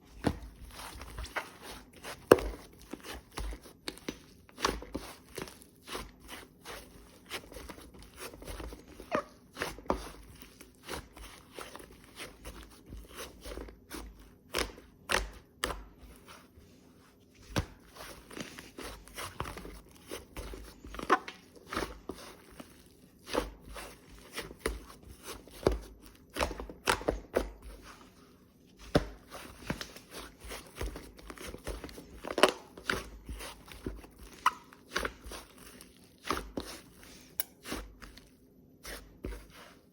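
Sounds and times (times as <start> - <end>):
slime squishing with clicks: 0.4 - 16.1, 28.8 - 39.7.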